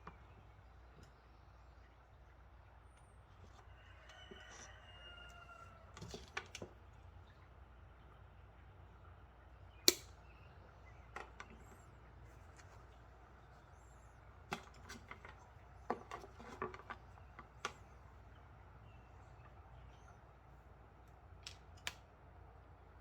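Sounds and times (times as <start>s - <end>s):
sharp snap of hand tool: 9.8s - 10.1s
light clicks and knocks of wire: 21.0s - 22.1s.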